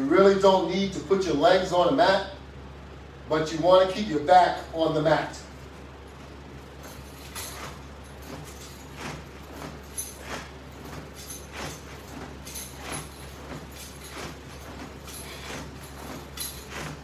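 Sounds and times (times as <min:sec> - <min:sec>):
steady low hum: 0:00.0 - 0:17.0
soft short exercise noises: 0:03.4 - 0:17.0.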